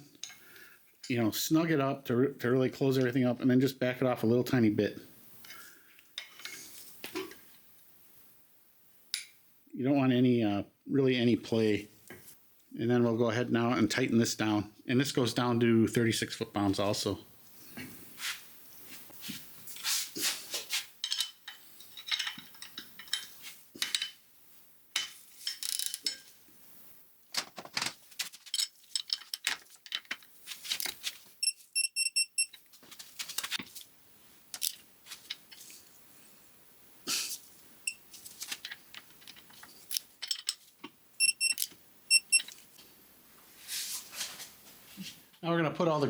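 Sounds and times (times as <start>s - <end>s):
quick high electronic beeps: 41.2s - 42.4s.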